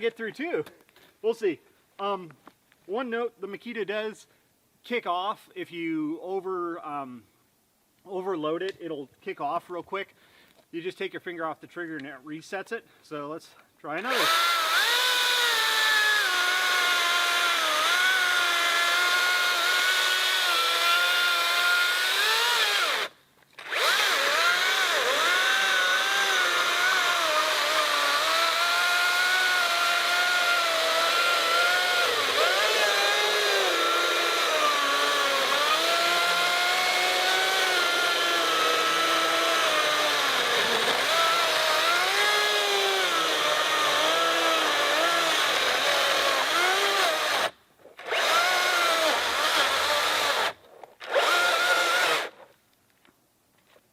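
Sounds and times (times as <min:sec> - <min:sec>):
electric chainsaw cutting wood: 0:14.1 - 0:52.4.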